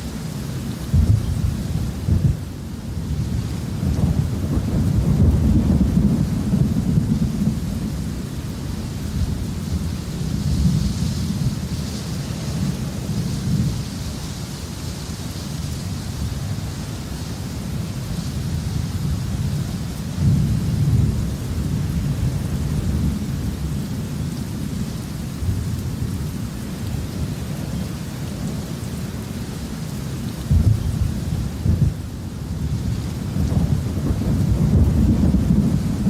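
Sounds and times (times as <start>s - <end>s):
steady rain: 0.0s - 36.0s
thunder rumbling: 0.8s - 14.0s, 17.6s - 27.6s, 30.4s - 36.0s.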